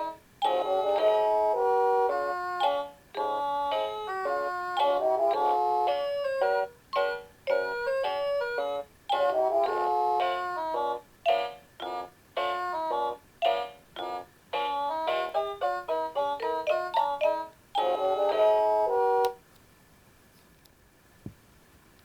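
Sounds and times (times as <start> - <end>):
electronic alarm clock melody: 0.0 - 19.4.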